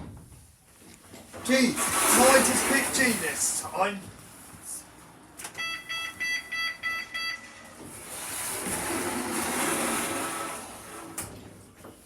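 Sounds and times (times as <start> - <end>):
lift doors and machinery hum: 4.5 - 11.8
lift beeping: 5.6 - 7.8.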